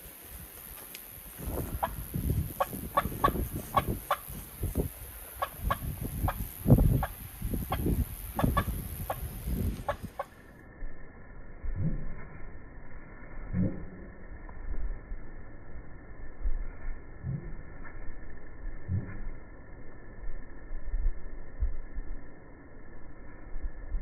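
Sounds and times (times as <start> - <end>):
turkey clucking: 2.6 - 4.4, 5.4 - 10.4.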